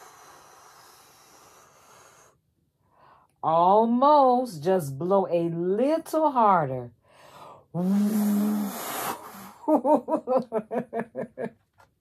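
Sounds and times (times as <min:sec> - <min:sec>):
woman blowing breath with hum: 0:00.0 - 0:03.3, 0:07.1 - 0:09.6
woman laughing: 0:09.4 - 0:11.6.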